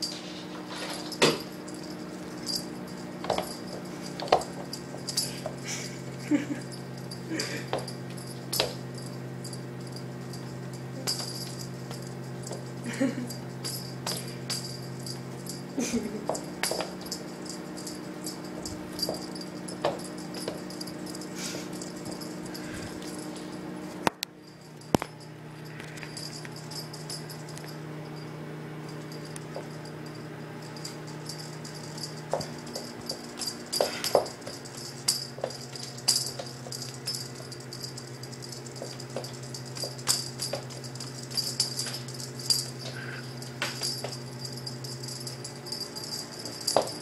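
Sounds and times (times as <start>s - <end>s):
steady hum: 0.0s - 47.0s.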